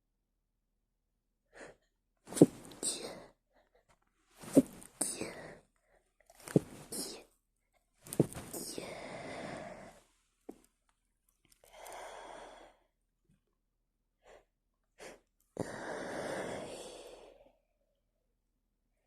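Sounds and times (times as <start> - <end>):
woman breathing: 4.4 - 7.2, 8.1 - 10.1, 11.6 - 13.0, 14.2 - 17.6.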